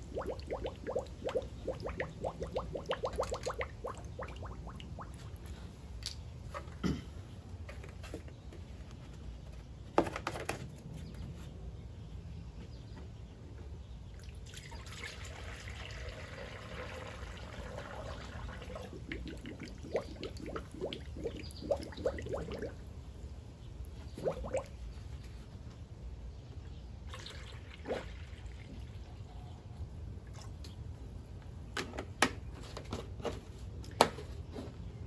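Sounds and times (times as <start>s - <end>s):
liquid glugging and bubbling: 0.0s - 5.7s, 14.2s - 23.2s, 23.9s - 25.2s, 27.0s - 29.3s
liquid pouring into funnel: 14.3s - 22.8s, 27.1s - 29.2s.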